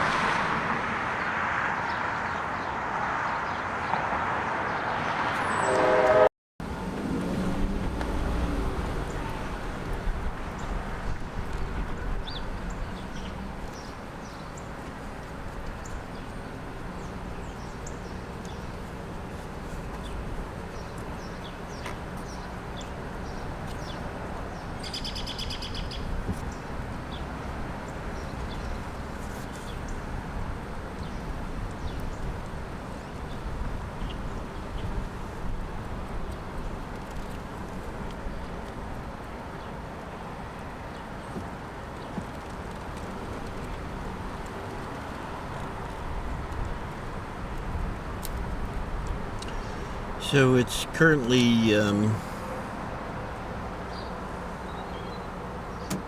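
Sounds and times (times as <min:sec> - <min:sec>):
birds chirping: 0:12.2 - 0:27.2, 0:49.4 - 0:52.3.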